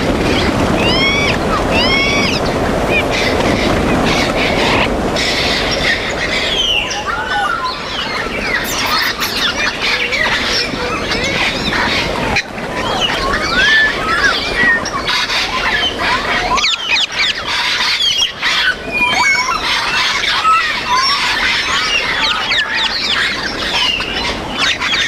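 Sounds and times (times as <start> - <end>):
parrots squawking and whistling: 0.8 - 3.3, 4.0 - 5.3, 8.4 - 10.6.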